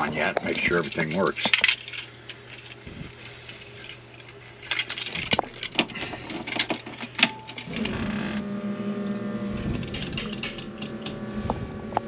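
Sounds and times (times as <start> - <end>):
steady hum: 0.0 - 12.0
car keys jingling: 0.5 - 7.7.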